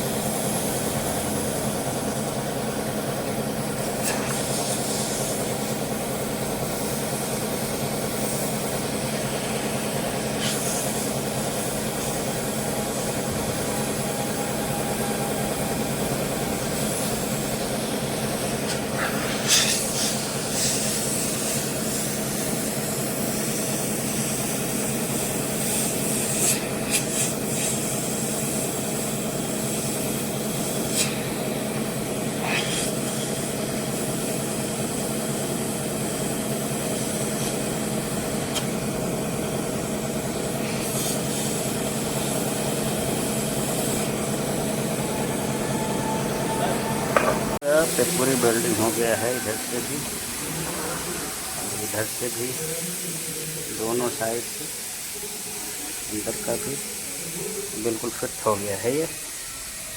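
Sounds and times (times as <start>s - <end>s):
plastic-welding tool humming: 3.7s - 34.7s.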